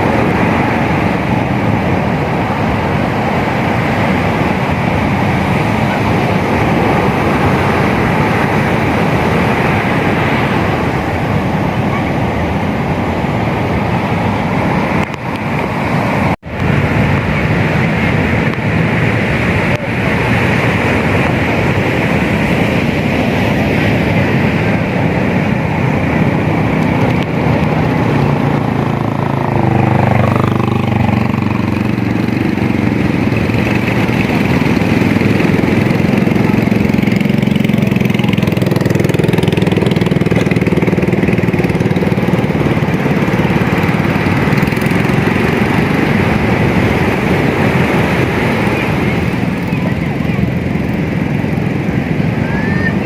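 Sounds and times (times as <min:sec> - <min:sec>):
surf rushing: 0:00.0 - 0:53.0
small engine running: 0:23.3 - 0:52.8.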